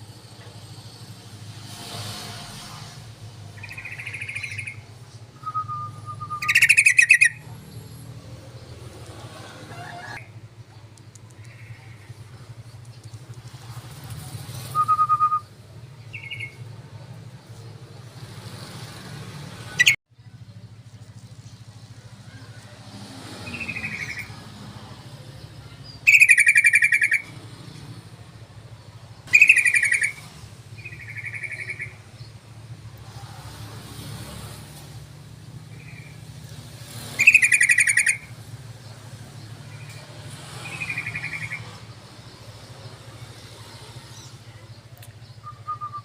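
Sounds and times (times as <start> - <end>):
bird harsh chattering calls: 3.4 - 7.9, 11.3 - 13.2, 23.4 - 24.5, 25.3 - 27.5, 29.0 - 32.3, 35.5 - 42.4.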